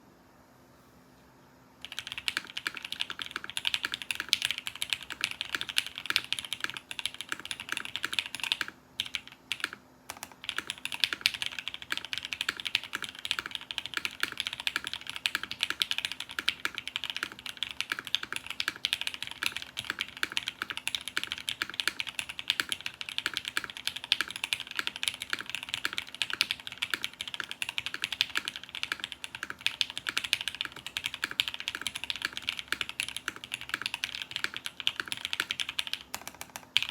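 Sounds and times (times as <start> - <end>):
typing on mechanical keyboard: 1.8 - 36.9.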